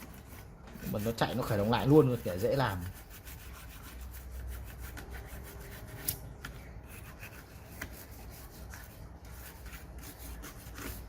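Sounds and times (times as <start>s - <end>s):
rubbing strokes on circuit board: 0.0s - 6.2s.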